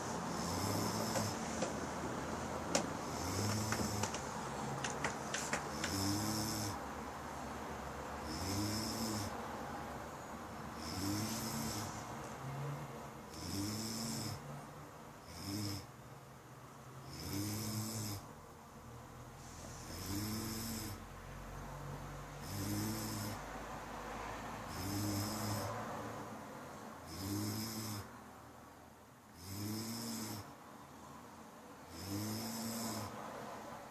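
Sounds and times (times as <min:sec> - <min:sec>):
person snoring: 0:00.0 - 0:01.5, 0:03.0 - 0:04.2, 0:05.0 - 0:06.8, 0:08.2 - 0:09.4, 0:10.8 - 0:12.1, 0:13.3 - 0:14.5, 0:15.2 - 0:15.9, 0:17.0 - 0:18.3, 0:19.8 - 0:21.0, 0:22.4 - 0:23.4, 0:24.7 - 0:25.8, 0:27.1 - 0:28.1, 0:29.4 - 0:30.5, 0:31.9 - 0:33.2.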